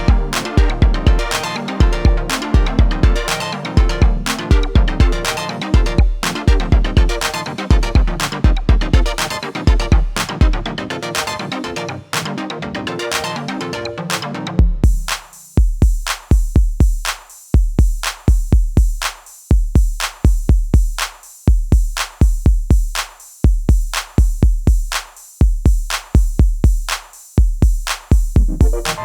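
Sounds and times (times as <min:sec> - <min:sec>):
drum machine beat: 0:00.0 - 0:11.6, 0:14.1 - 0:29.0
synth notes: 0:00.0 - 0:14.8, 0:28.4 - 0:29.0.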